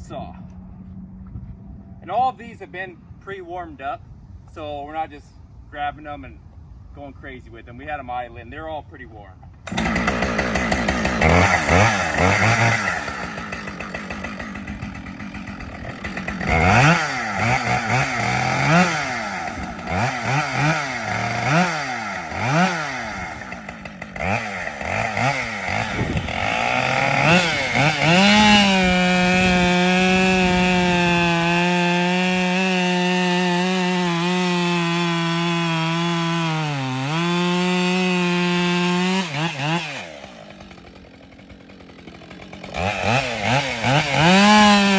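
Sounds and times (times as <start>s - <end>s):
chainsaw cutting wood: 9.6s - 44.9s
chainsaw revving: 9.6s - 44.9s.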